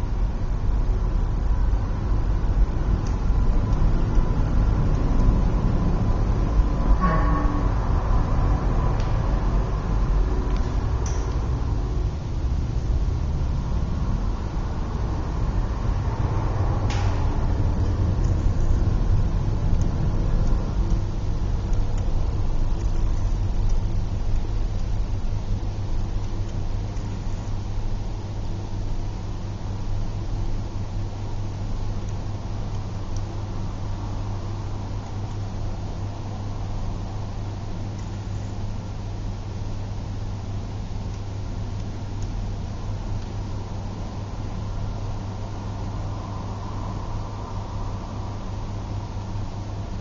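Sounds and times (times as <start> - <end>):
jet engines deep rumble: 0.0 - 50.0
thin steady engine whine: 0.0 - 50.0
brief tone: 6.9 - 8.2.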